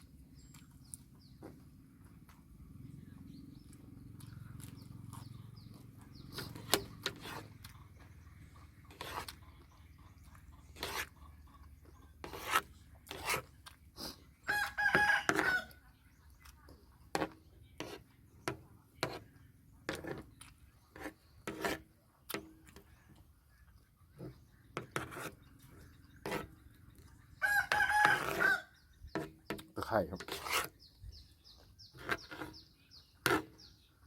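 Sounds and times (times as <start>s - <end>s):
rooster crowing: 14.5s - 15.8s, 27.4s - 28.7s.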